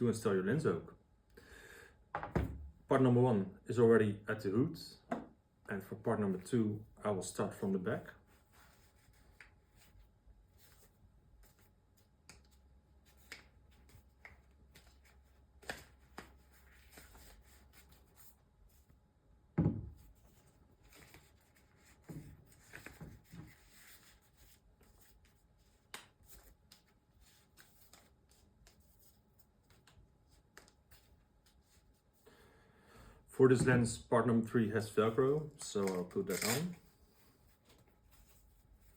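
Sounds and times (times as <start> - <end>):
dull knock: 19.6 - 19.9.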